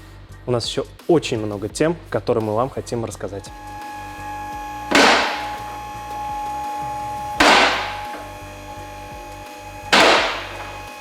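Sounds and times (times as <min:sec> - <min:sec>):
background music with bass line: 0:00.0 - 0:11.0
loud crash-like hits: 0:04.9 - 0:05.8, 0:07.4 - 0:08.3, 0:09.9 - 0:11.0.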